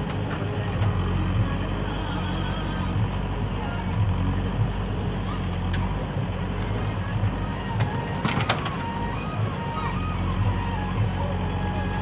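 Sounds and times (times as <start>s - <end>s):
diesel engine running: 0.0s - 12.0s.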